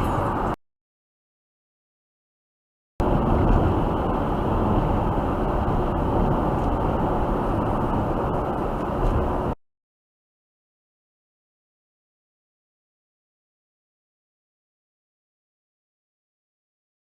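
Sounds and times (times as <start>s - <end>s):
car road and engine noise: 0.0s - 0.6s, 3.0s - 9.6s.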